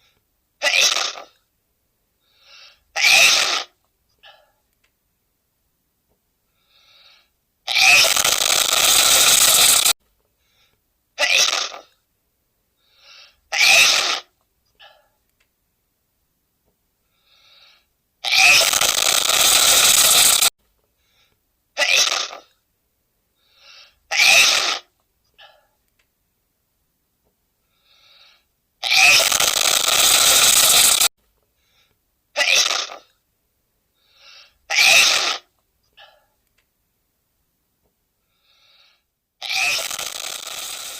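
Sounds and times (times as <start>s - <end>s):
faint quick breaths: 2.2s - 2.9s, 6.4s - 7.4s, 9.6s - 10.8s, 12.7s - 13.5s, 17.0s - 18.0s, 20.9s - 21.4s, 23.3s - 24.1s, 27.6s - 28.5s, 30.5s - 32.0s, 33.9s - 34.7s, 38.2s - 39.2s.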